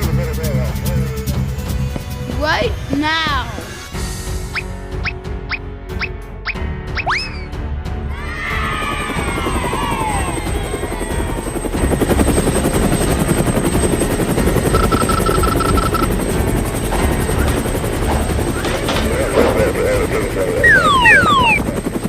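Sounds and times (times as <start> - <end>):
cartoon falling whistle: 6.5 - 7.5, 20.6 - 21.7
helicopter rotor chopping: 8.7 - 22.0
short beeps: 14.7 - 16.1.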